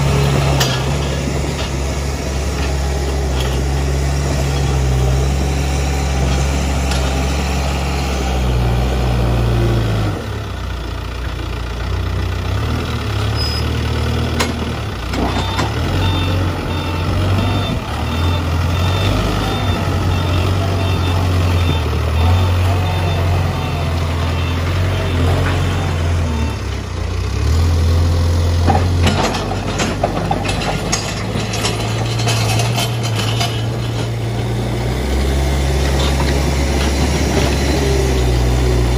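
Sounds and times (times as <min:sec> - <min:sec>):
diesel engine running: 0:00.0 - 0:38.9
reversing alarm beeping: 0:15.2 - 0:26.7.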